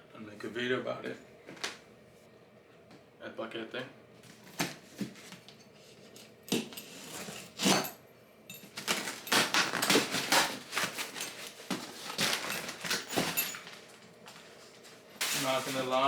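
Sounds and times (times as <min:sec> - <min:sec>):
package rustling and scraping: 0:08.7 - 0:16.0.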